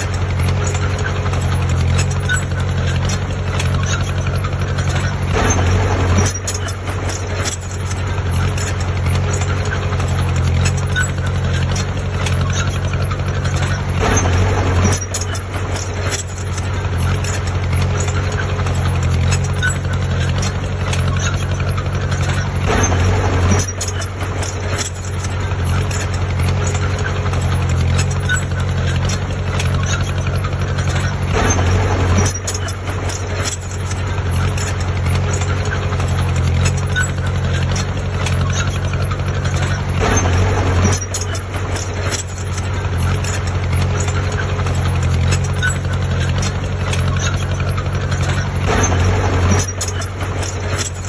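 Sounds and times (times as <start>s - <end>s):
heavy diesel machinery engine: 0.0s - 51.0s
light clattering: 0.0s - 51.0s.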